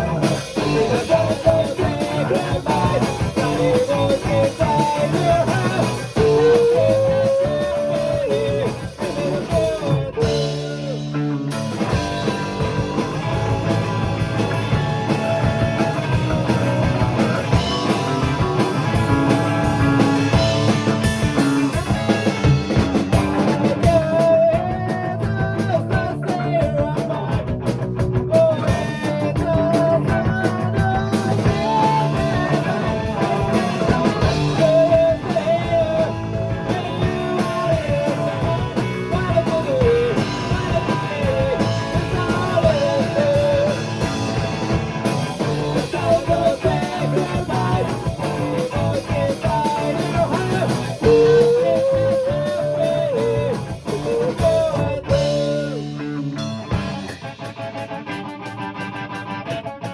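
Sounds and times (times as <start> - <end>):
person singing: 0.0 - 13.8, 23.3 - 27.4, 28.3 - 56.8
punk rock band playing: 0.0 - 59.9.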